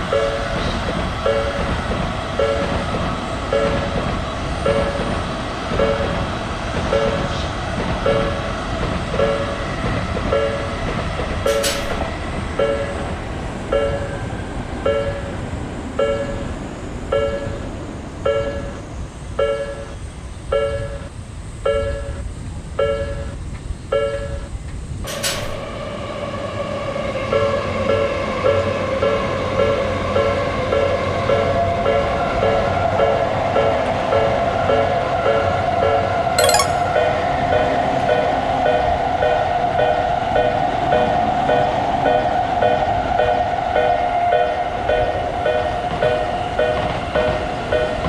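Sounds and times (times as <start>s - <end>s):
train rumbling: 0.0s - 16.7s
railroad crossing alarm ringing: 19.4s - 21.1s, 36.4s - 48.0s.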